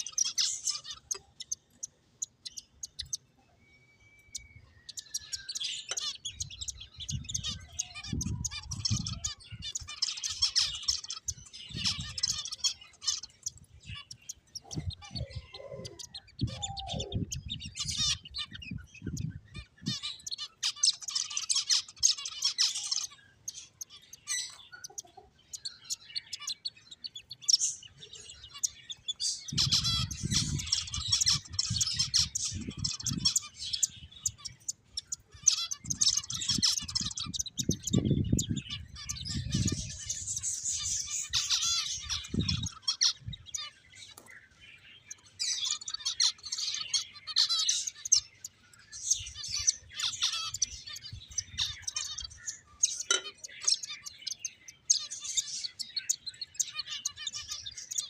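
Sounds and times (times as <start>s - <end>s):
finches chirping: 0.0s - 58.0s.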